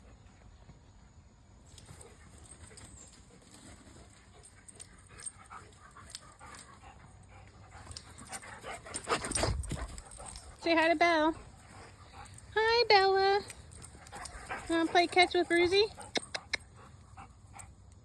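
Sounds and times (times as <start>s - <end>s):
puppy panting: 3.9s - 18.0s.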